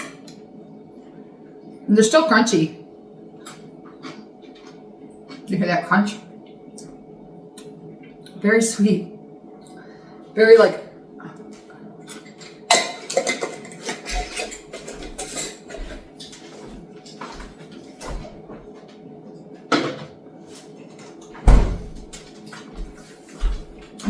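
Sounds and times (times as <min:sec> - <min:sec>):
glass jar and utensils clattering: 0:12.3 - 0:16.8.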